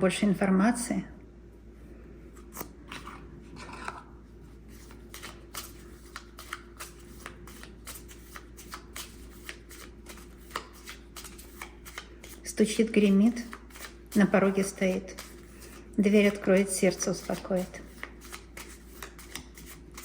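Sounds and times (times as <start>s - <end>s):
cards being shuffled: 2.4s - 4.0s, 4.7s - 20.0s.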